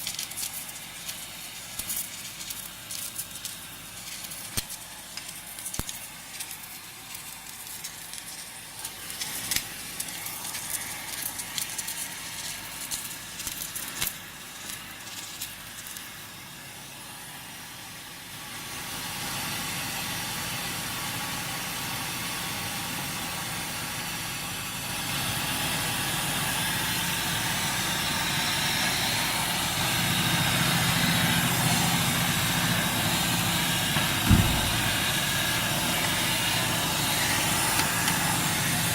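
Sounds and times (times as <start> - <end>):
arc welding crackling: 0.0 - 16.6, 26.9 - 38.9
hissing rumbling noise: 34.0 - 36.3.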